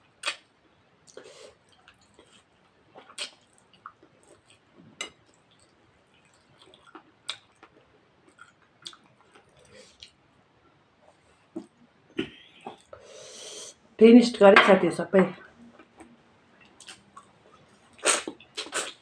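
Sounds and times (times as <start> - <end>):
person chewing: 0.2 - 0.4, 1.1 - 10.2, 11.2 - 13.4, 15.7 - 19.0.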